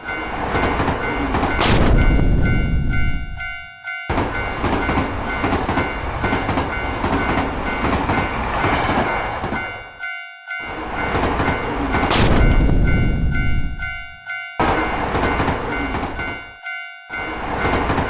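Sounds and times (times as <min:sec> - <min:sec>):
train rushing past: 0:00.0 - 0:10.0, 0:10.6 - 0:18.0
railroad crossing bell ringing: 0:00.0 - 0:18.0
sharp crash: 0:01.6 - 0:03.5, 0:12.1 - 0:14.1.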